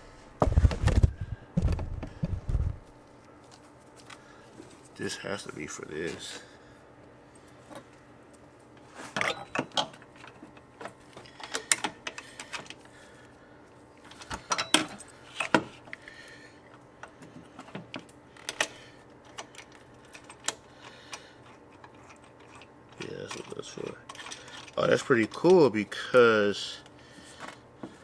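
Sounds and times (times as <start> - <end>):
small metal parts clinking: 21.4 - 25.6.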